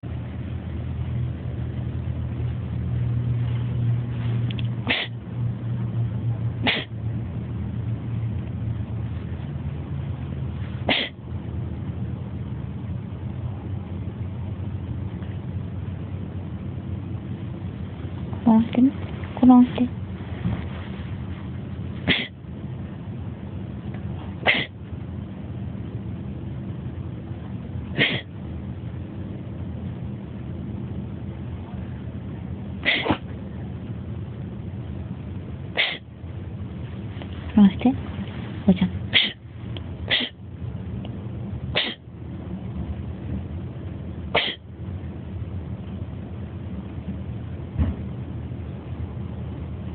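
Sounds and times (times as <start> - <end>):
steady low hum: 0.0 - 49.9
pet sneezing: 4.8 - 5.2, 6.6 - 7.0, 10.8 - 11.2, 22.0 - 22.4, 24.4 - 24.8, 27.9 - 28.3, 32.8 - 33.3, 35.7 - 36.1, 38.6 - 39.4, 40.1 - 40.4, 41.7 - 42.0, 44.3 - 44.7.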